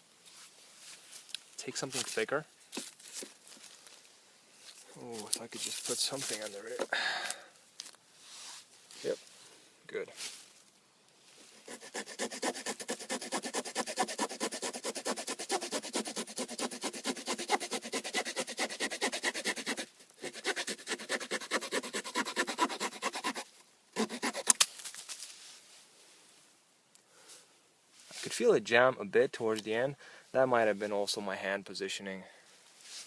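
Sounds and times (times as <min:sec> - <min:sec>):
small saw cutting wood: 0:11.5 - 0:24.6.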